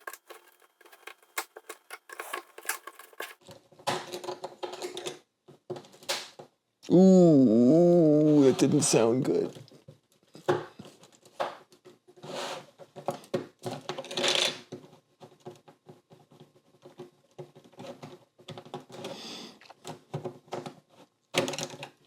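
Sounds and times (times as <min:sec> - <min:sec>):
plastic bricks clicking and snapping: 0:00.0 - 0:05.2
plastic scraping against plastic: 0:00.0 - 0:05.2.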